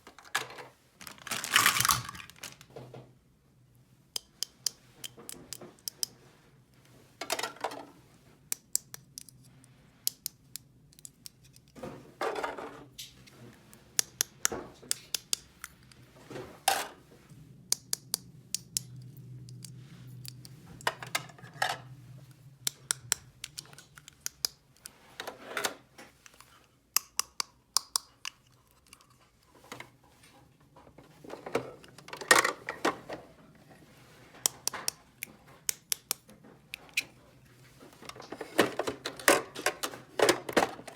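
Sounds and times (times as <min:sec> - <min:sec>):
plastic toy pieces clicking: 0:10.1 - 0:11.8, 0:14.0 - 0:15.8, 0:22.6 - 0:24.9.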